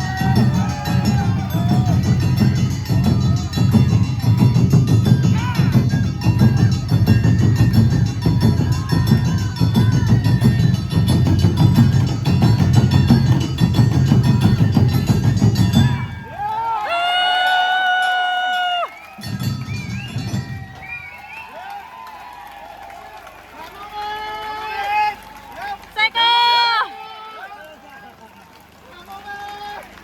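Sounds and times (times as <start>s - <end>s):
taiko drums beating: 0.0s - 17.0s, 17.9s - 21.2s.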